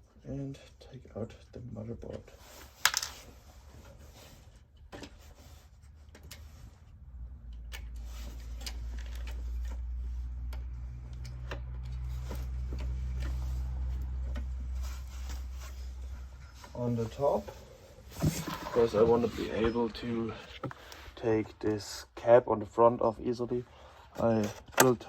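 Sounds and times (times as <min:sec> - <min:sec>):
light clicks and taps of parts: 0:07.4 - 0:14.8.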